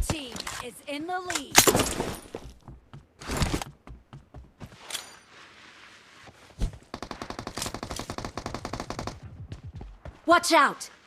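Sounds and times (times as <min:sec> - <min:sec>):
rapid automatic gunfire: 0:07.0 - 0:09.2.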